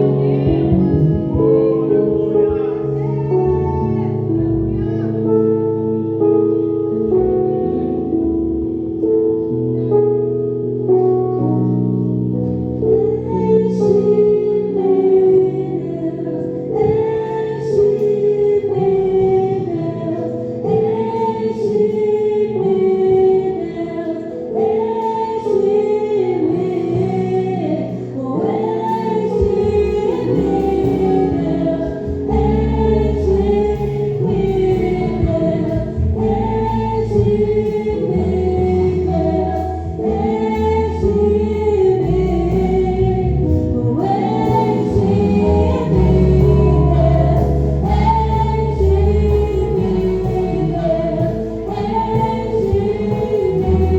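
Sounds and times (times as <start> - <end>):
deep bass notes: 0.0 - 20.3, 28.5 - 53.9
instrumental accompaniment: 0.0 - 53.9
voices singing: 13.3 - 53.9.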